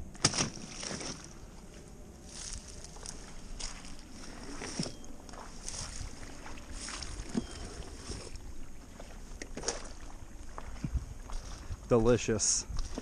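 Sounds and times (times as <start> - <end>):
paddle splashing in water: 0.2 - 1.4.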